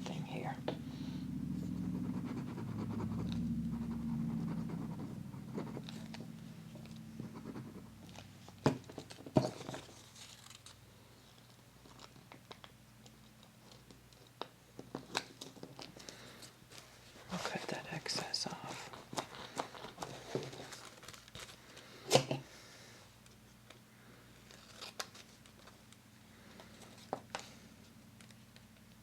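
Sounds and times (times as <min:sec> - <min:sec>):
low hum: 0:00.0 - 0:08.6.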